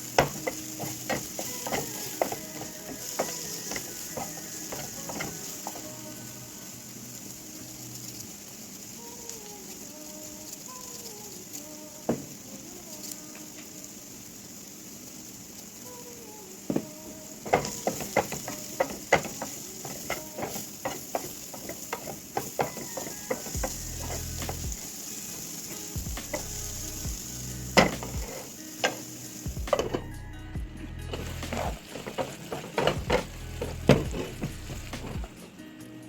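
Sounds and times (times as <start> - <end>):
spatula scraping a pan: 0.0 - 8.9, 16.7 - 30.3, 31.0 - 35.5
food sizzling in a hot pan: 0.0 - 36.0.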